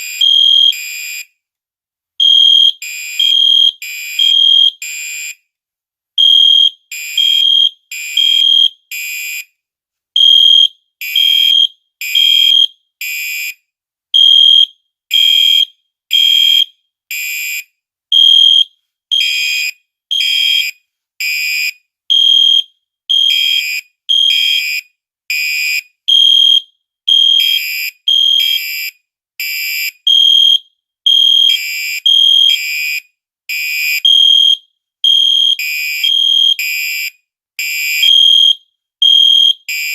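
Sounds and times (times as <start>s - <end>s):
fire alarm horns blasting: 26.1s - 28.8s.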